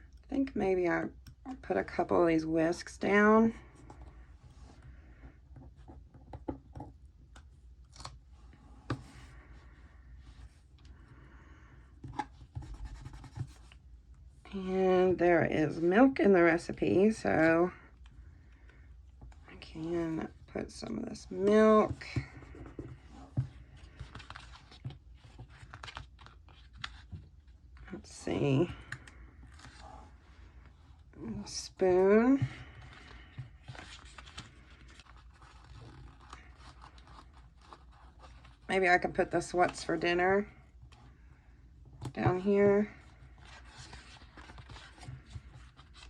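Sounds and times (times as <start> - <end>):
paper rustling: 32.9 - 38.7.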